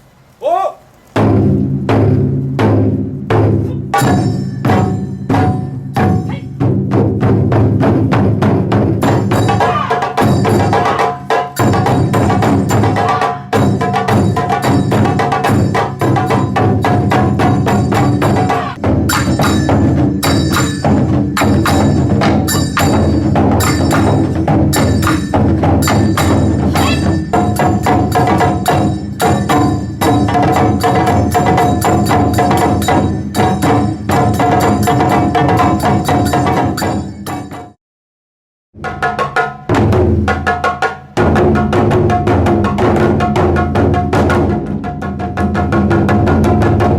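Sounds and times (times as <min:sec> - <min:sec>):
taiko drums beating: 0:01.2 - 0:37.8, 0:38.8 - 0:46.9
held high note: 0:26.6 - 0:27.3.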